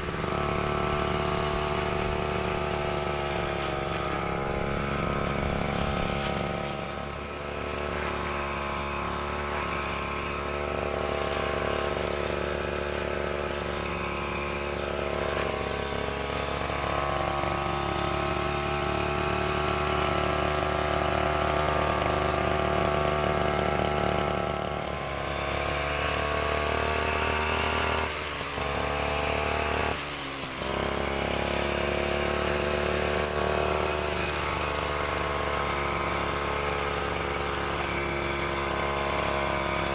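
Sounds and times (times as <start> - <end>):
brush cutter engine running: 0.0 - 39.9.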